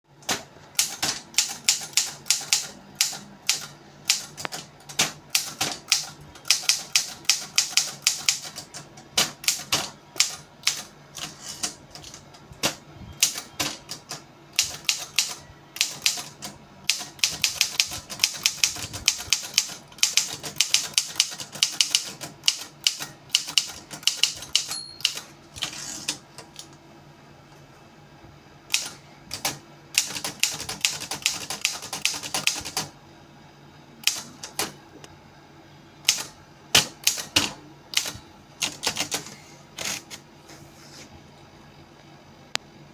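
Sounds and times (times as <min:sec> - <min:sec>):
typewriter key strikes: 0:16.9 - 0:25.3.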